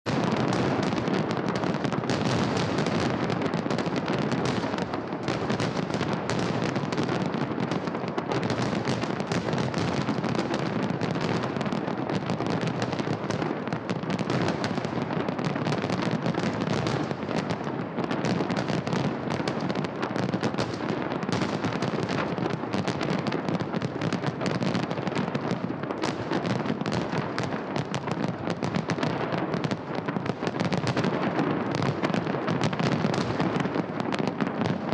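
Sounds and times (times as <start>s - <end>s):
fireworks crackling and popping: 0.0s - 34.9s.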